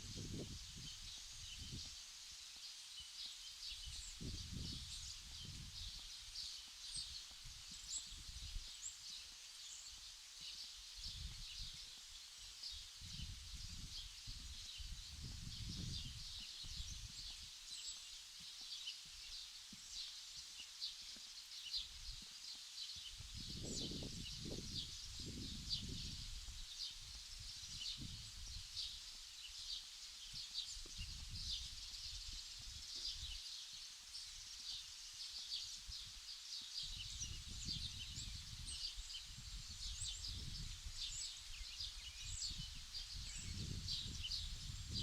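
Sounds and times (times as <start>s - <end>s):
wind buffeting microphone: 0.0s - 1.9s, 3.9s - 6.0s, 13.0s - 17.4s, 23.2s - 28.8s, 36.9s - 45.0s.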